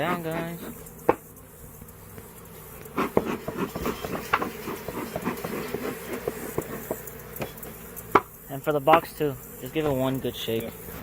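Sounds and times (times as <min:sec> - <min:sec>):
honey bees buzzing: 0:00.0 - 0:11.0
knocks and clicks of hive parts: 0:00.8 - 0:05.5, 0:06.1 - 0:08.3.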